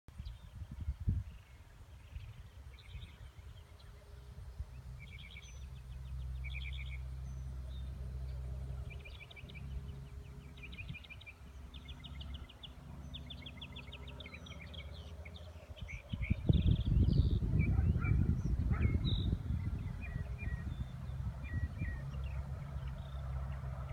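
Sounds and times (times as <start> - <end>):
songbird trilling: 8.8 - 23.2.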